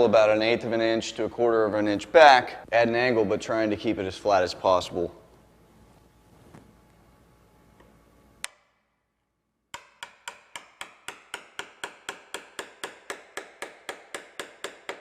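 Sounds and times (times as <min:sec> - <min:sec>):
hammer tapping wood chisel: 0:09.7 - 0:15.0.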